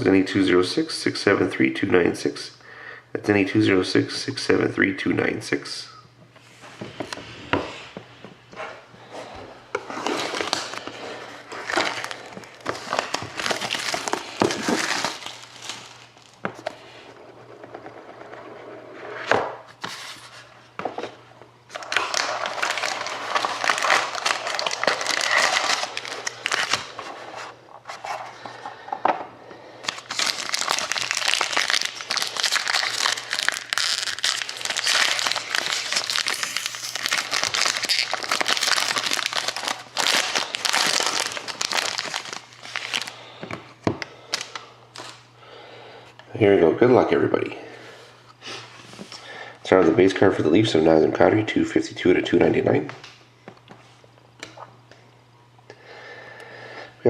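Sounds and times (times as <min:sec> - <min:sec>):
plastic wrapping crinkling and tearing: 0:09.8 - 0:16.4, 0:21.7 - 0:27.5, 0:29.8 - 0:43.3.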